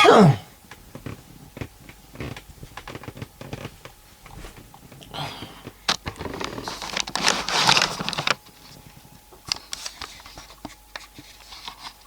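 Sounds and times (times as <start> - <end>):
rustling and scraping: 0.7 - 12.0.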